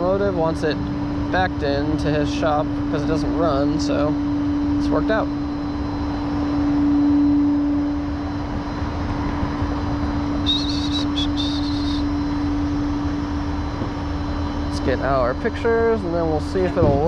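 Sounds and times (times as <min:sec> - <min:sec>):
vehicle engine idling: 0:00.0 - 0:17.0
high chirps: 0:10.4 - 0:12.4.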